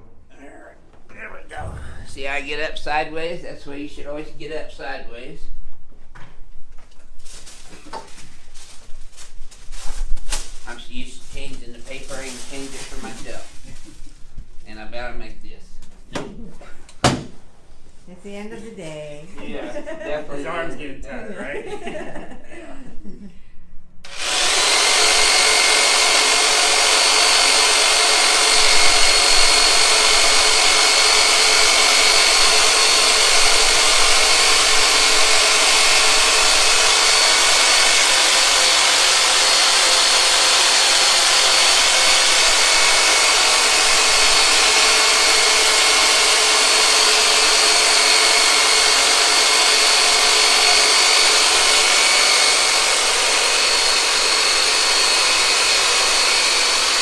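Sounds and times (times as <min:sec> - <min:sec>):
massage tool motor whirring: 0:24.0 - 0:57.0.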